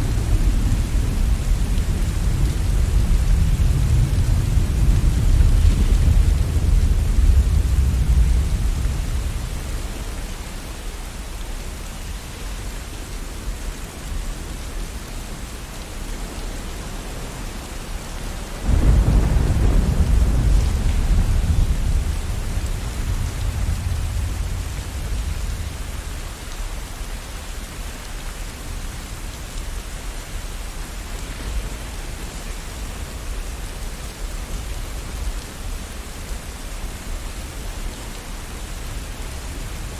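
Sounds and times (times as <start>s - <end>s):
thunder rumbling: 0.0s - 9.7s, 18.6s - 26.2s
steady rain: 0.0s - 39.9s
loud thunderclap: 18.6s - 25.7s.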